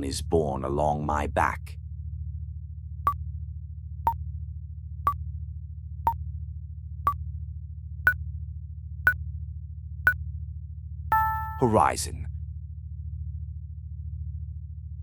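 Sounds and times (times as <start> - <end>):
timer click and beep: 11.1 - 11.8.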